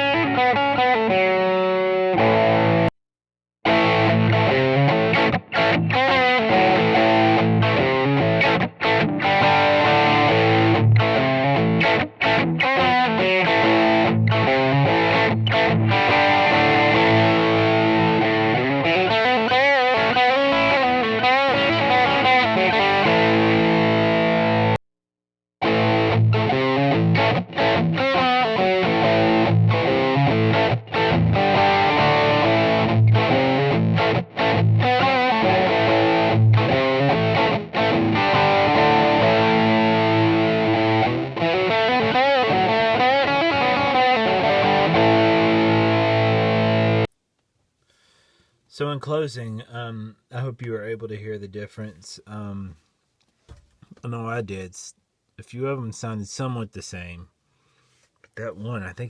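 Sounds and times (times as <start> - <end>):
overdriven electric guitar: 0.0 - 2.9, 3.6 - 24.8, 25.6 - 47.1.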